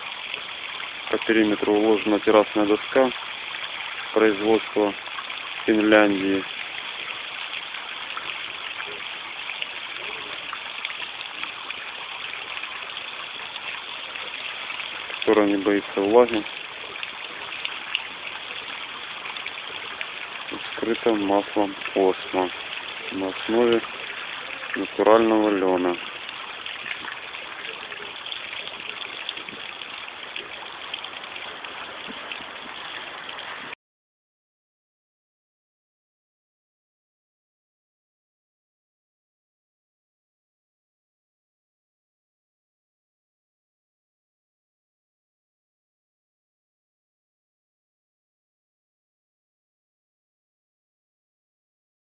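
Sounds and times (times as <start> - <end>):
waterfall splashing into pond: 0.0 - 33.8.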